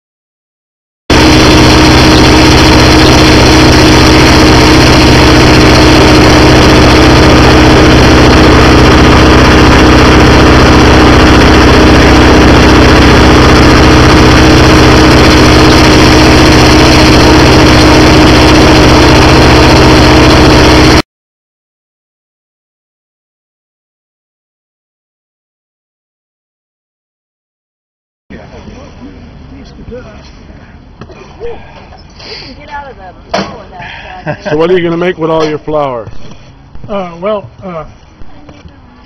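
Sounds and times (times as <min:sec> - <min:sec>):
mill grinding machine drone: 0:01.1 - 0:21.0.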